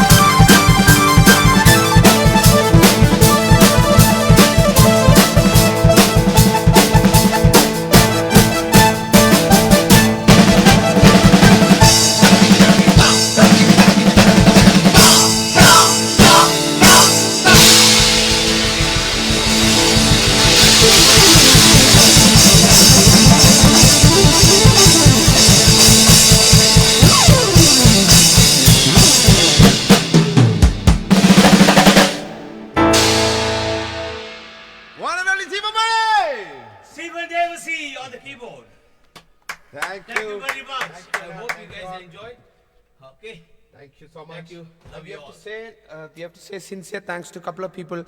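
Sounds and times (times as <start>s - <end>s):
drum strokes and rolls: 0.0s - 35.7s
falling pitch glide: 15.0s - 29.5s
keyboard tones: 20.3s - 29.6s.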